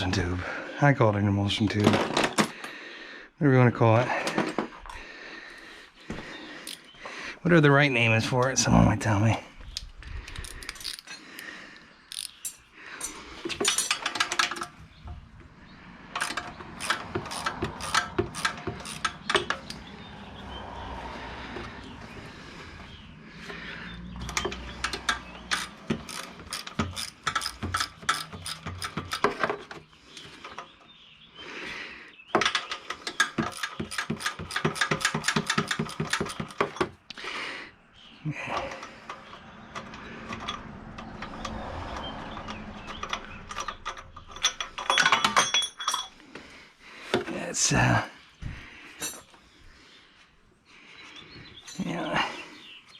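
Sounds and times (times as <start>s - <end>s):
ratchet wrench clicking: 9.8s - 11.2s, 12.1s - 12.6s, 16.2s - 19.8s, 24.3s - 29.4s, 33.2s - 36.6s.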